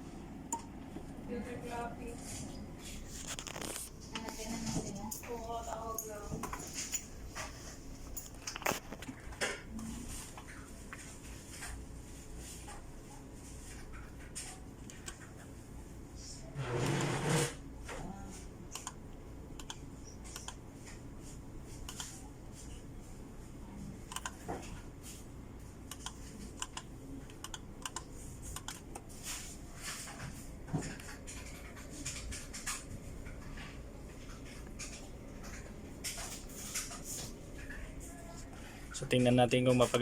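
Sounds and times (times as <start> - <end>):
keyboard typing: 18.7 - 19.0, 19.6 - 20.6, 24.1 - 24.4, 25.9 - 29.1.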